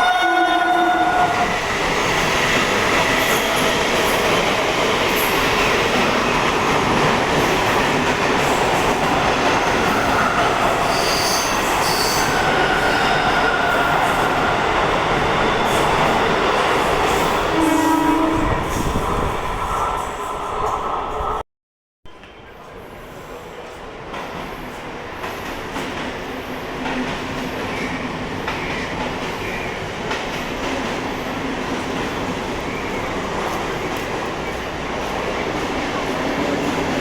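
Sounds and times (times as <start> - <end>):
train horn: 0.0 - 1.5, 17.5 - 18.7
train wheels rumbling on rails: 0.6 - 21.4, 22.2 - 37.0.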